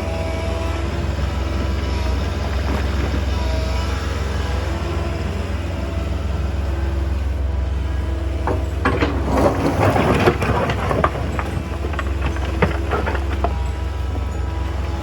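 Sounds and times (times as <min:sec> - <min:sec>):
excavator diesel engine running: 0:00.0 - 0:15.0
stones clattering against bucket: 0:08.4 - 0:15.0.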